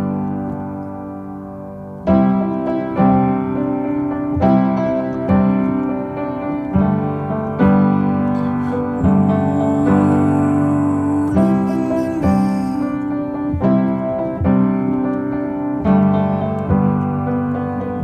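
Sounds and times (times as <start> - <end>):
piano playing sustained chords: 0.0 - 18.0.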